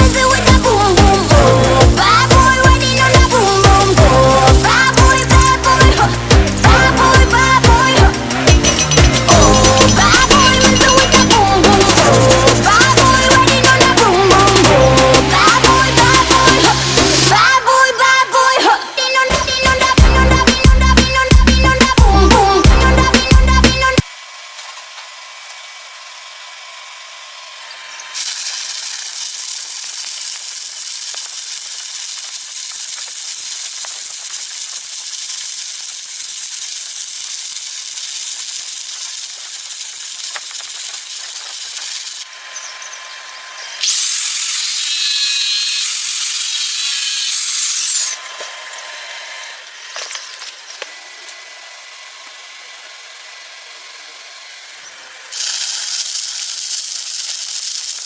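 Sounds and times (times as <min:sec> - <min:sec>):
welding arc hissing and crackling: 0:00.0 - 0:25.6, 0:27.6 - 0:48.9, 0:49.5 - 0:51.4, 0:54.0 - 0:58.0.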